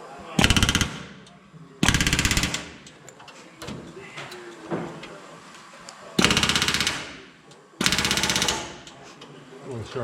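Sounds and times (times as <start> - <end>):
rivet gun hammering: 0.4 - 2.8, 6.2 - 7.2, 7.8 - 8.8.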